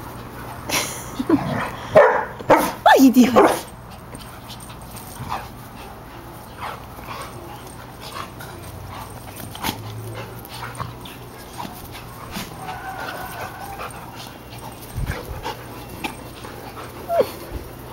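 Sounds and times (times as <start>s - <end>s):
puppies yipping and whimpering: 7.2s - 17.9s.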